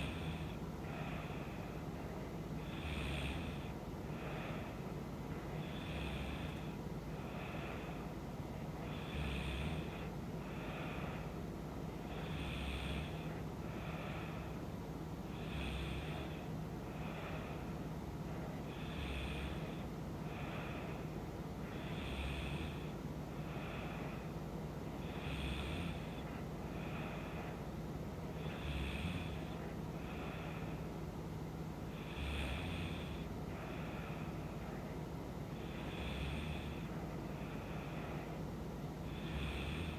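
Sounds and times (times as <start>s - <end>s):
woman snoring: 0.0s - 1.9s, 2.6s - 8.2s, 8.8s - 11.4s, 12.0s - 14.6s, 15.3s - 17.7s, 18.6s - 24.3s, 25.0s - 27.6s, 28.3s - 30.9s, 31.9s - 34.4s, 35.6s - 38.2s, 39.0s - 39.9s
steady low hum: 0.0s - 39.9s.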